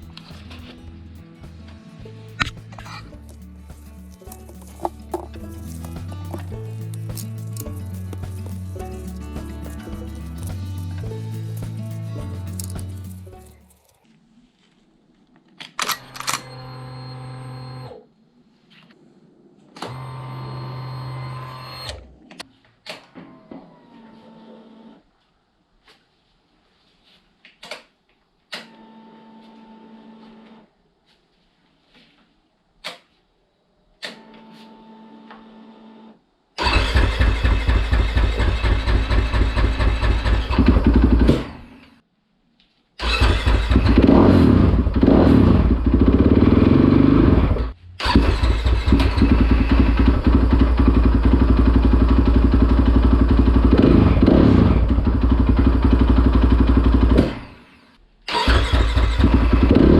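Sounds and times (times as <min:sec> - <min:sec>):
fuel pump humming: 0:02.4 - 0:13.6
dirt bike engine running: 0:02.4 - 0:13.7, 0:36.7 - 0:41.6, 0:43.2 - 0:57.5, 0:58.6 - 0:59.9.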